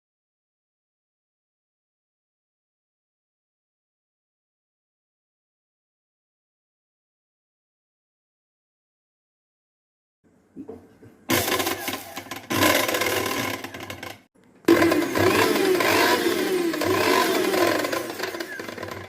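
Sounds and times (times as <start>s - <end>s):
mixer grinder running: 11.3s - 19.0s.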